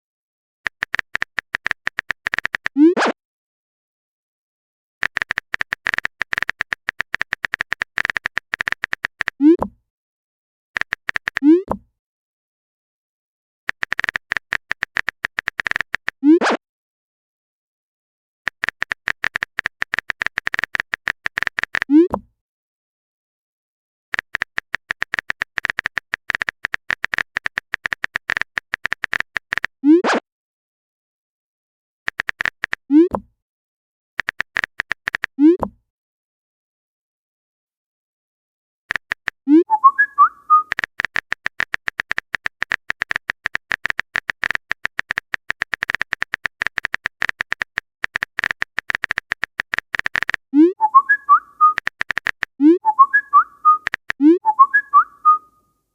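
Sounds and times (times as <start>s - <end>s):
phone keyboard typing clicks: 0.7s - 2.8s, 5.0s - 9.7s, 10.8s - 11.8s, 13.7s - 16.2s, 18.5s - 22.2s, 24.1s - 29.8s, 32.1s - 33.2s, 34.2s - 35.8s, 38.9s - 54.9s
chirpy whistle-like notes: 39.5s - 40.7s, 50.7s - 51.8s, 52.7s - 55.8s.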